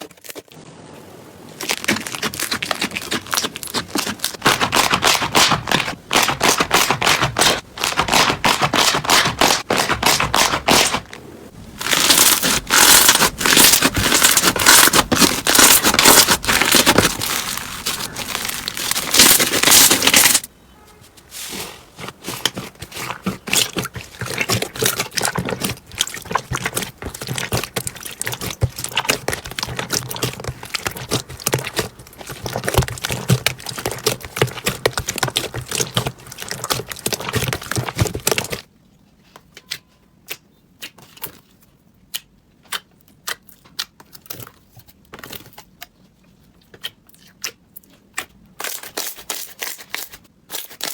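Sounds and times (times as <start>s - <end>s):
slime crackling and popping: 1.6s - 11.1s, 11.7s - 20.5s, 22.4s - 38.6s.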